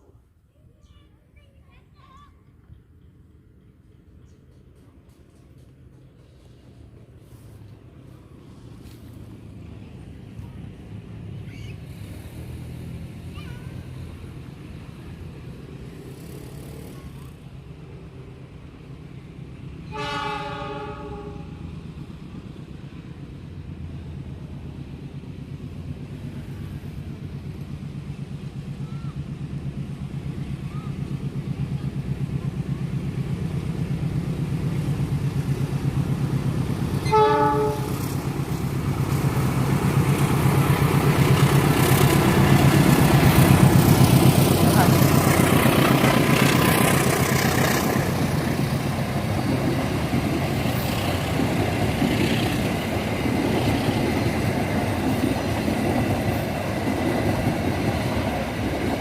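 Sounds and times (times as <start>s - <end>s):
wheel and rail noise: 0.0s - 59.0s
locomotive engine pulsing: 2.6s - 59.0s
locomotive air horn blast: 19.9s - 21.6s, 37.0s - 38.0s.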